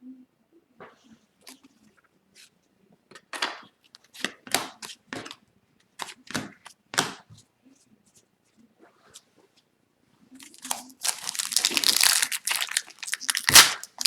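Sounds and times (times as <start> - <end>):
trading cards flipped: 10.4 - 14.0.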